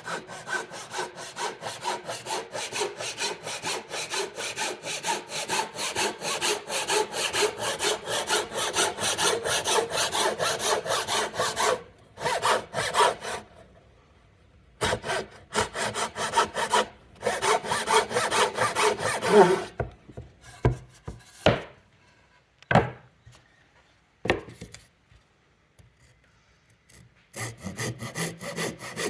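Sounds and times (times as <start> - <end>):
handsaw cutting wood: 0.0 - 13.5, 14.8 - 19.8, 27.4 - 29.0.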